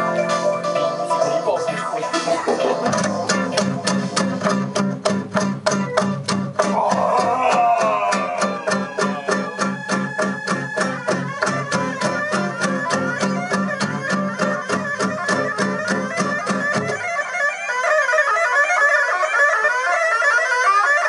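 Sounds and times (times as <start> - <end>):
fast steady beat: 1.1 - 5.8, 6.6 - 17.1.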